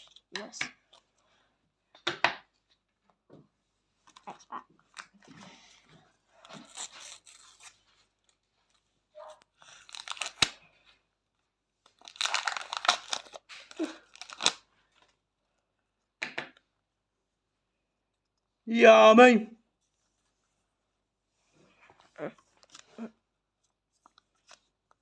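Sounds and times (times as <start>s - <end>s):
wrapper tearing and crinkling: 6.5s - 7.8s, 9.6s - 10.6s, 11.9s - 14.7s.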